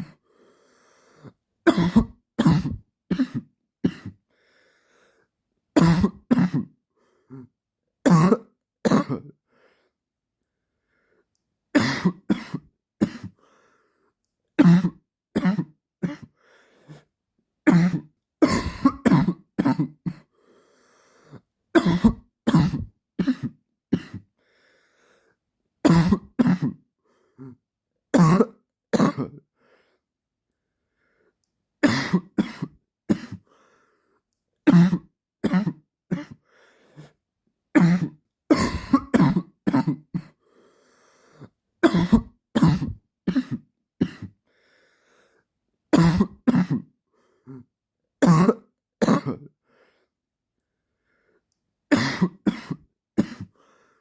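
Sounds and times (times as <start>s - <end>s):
man coughing: 1.7s - 4.2s, 5.8s - 6.8s, 8.1s - 9.3s, 11.8s - 13.4s, 17.7s - 20.3s, 21.8s - 24.3s, 28.2s - 29.4s, 31.8s - 33.4s, 34.7s - 36.4s, 37.8s - 40.4s, 41.8s - 44.4s, 51.9s - 53.5s.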